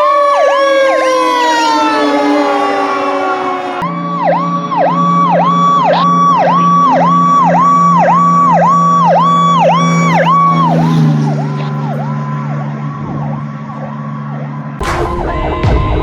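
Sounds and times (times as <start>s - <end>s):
siren yelping: 0.0s - 16.0s
low drone: 14.7s - 16.0s.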